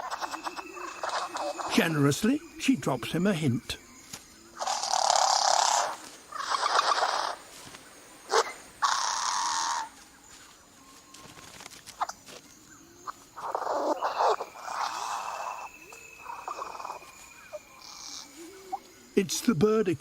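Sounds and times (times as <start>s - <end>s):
bird giving hoarse wheezy calls: 13.4s - 17.2s.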